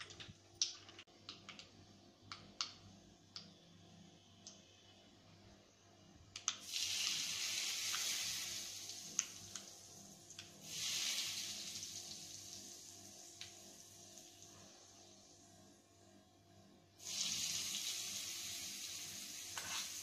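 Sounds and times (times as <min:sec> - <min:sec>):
hot griddle sizzling: 0:06.6 - 0:09.5, 0:10.6 - 0:13.9, 0:17.0 - 0:20.0.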